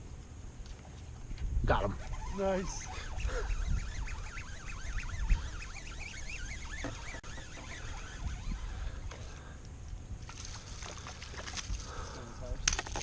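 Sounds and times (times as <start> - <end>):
birds warbling chirps: 1.8 - 9.6.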